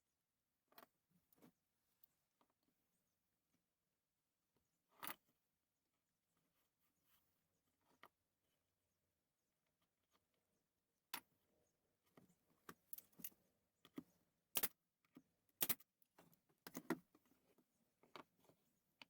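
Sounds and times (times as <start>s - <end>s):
small parts and tools clinking: 12.8s - 13.4s, 14.6s - 14.8s, 15.6s - 15.9s.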